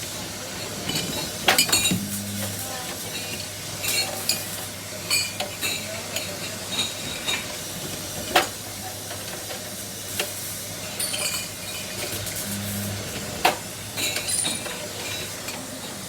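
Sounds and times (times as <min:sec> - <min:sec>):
low machine hum: 0:01.8 - 0:02.9, 0:12.3 - 0:14.2.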